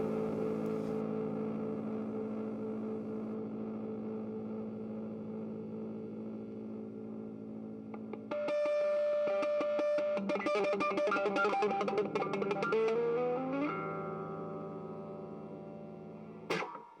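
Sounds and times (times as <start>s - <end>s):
electric guitar with effects: 0.0s - 17.0s.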